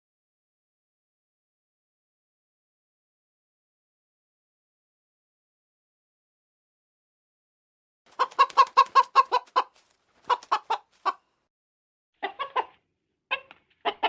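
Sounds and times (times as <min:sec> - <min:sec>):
chicken clucking: 0:08.1 - 0:11.3, 0:12.2 - 0:14.0.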